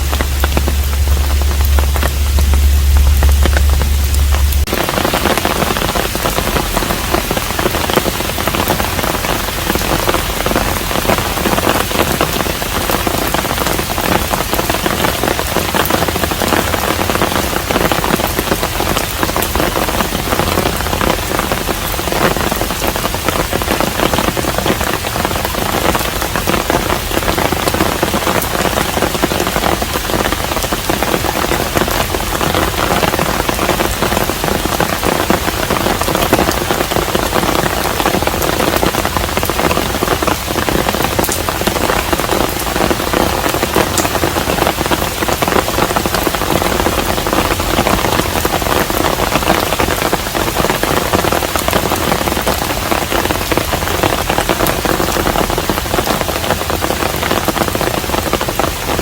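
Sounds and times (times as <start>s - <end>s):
low hum: 0.0s - 9.3s
rain patter: 0.0s - 59.0s.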